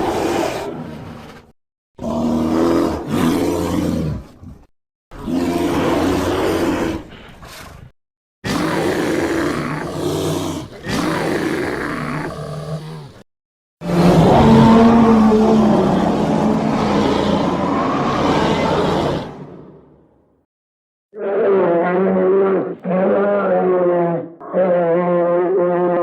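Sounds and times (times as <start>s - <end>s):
low dinosaur roars: 2.0s - 4.3s, 5.2s - 7.6s, 13.8s - 20.1s.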